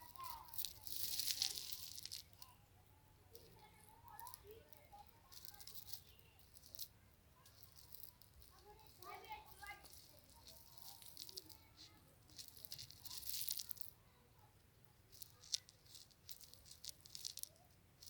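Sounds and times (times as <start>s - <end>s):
dry rustling and crackling: 0.0s - 2.7s, 3.3s - 18.0s.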